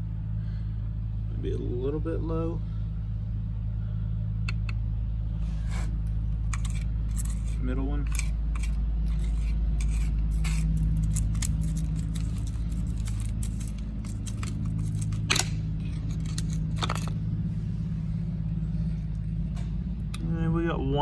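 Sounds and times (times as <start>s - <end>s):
low mechanical hum: 0.0s - 21.0s
plastic battery case clicks and scrapes: 5.6s - 17.2s.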